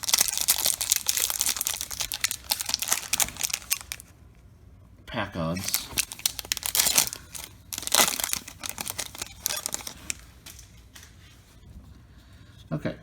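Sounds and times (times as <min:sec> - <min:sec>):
card pack wrapper tearing and crinkling: 0:00.0 - 0:04.1, 0:05.6 - 0:11.1.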